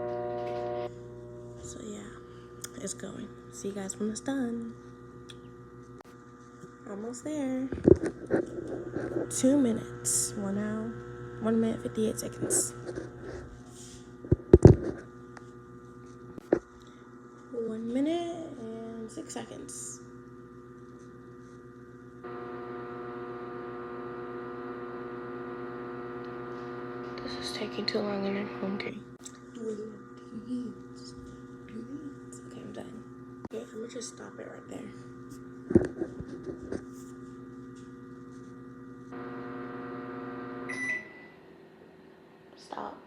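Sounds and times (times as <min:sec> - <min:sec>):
microwave oven hum: 0:00.0 - 0:43.0
microwave beep: 0:39.2 - 0:41.5.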